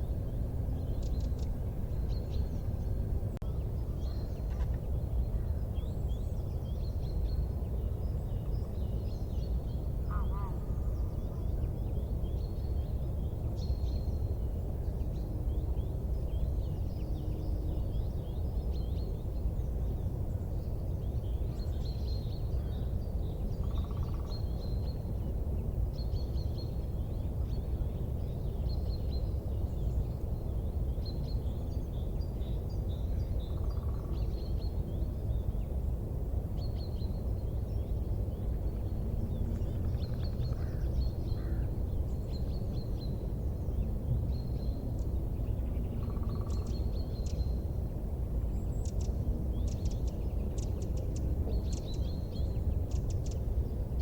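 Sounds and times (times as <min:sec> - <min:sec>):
small birds chirping: 0:36.6 - 0:54.0.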